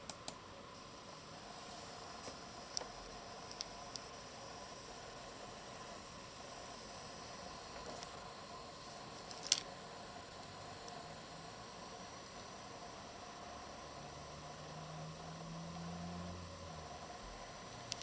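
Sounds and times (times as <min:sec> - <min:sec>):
graphics card hissing: 0:00.8 - 0:13.5.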